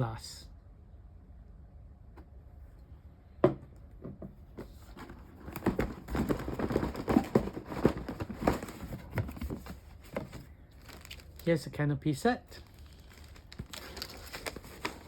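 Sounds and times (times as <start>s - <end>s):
plastic packaging crinkling: 4.9s - 11.7s, 12.3s - 15.0s.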